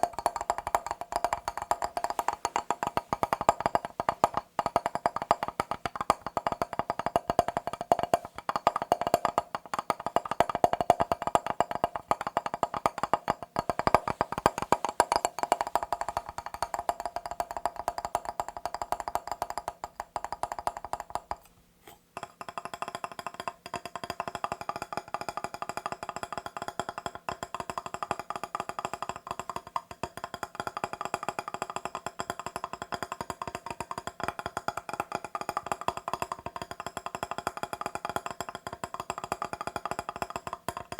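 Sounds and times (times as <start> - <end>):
rapid tapping on glass mirror: 0.0 - 21.5, 22.2 - 40.9.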